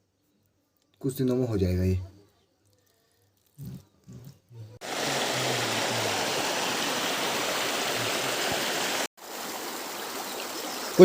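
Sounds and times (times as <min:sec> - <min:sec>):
river water rushing: 0:04.8 - 0:11.0.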